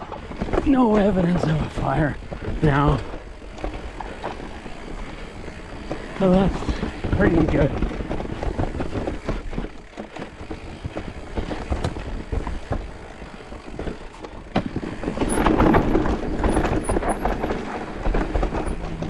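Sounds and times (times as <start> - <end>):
bike rattling: 0.0 - 19.0
bike tyres rolling on dirt: 0.0 - 19.0.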